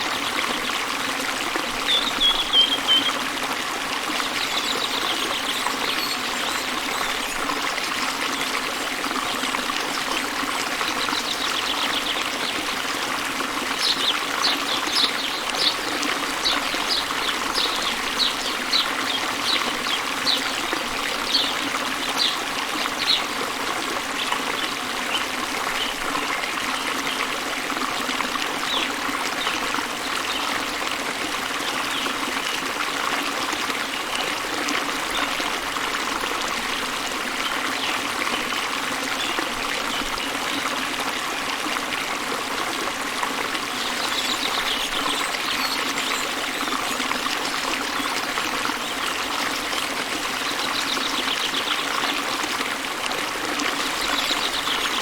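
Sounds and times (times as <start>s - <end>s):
waterfall: 0.0s - 55.0s
bird chirping: 1.9s - 3.2s.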